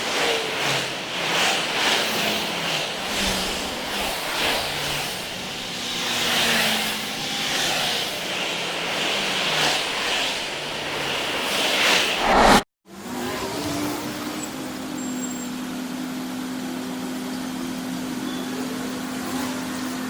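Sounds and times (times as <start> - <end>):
road traffic passing: 11.0 - 12.6.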